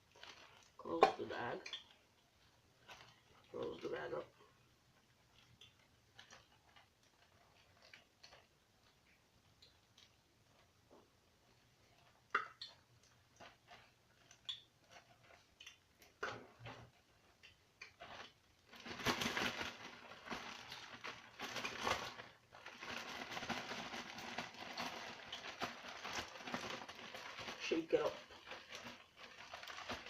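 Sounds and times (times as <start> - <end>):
plastic bag crinkling: 0.0 - 4.4, 13.0 - 30.0.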